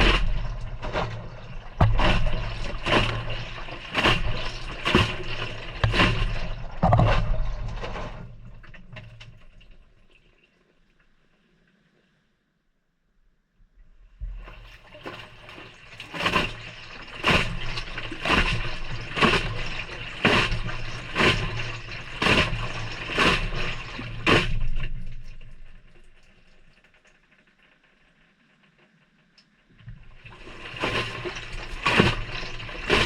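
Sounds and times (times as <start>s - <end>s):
wet laundry splashing in drum: 0.0s - 10.6s, 14.2s - 26.8s, 30.0s - 33.0s
washing machine motor hum: 30.1s - 33.0s.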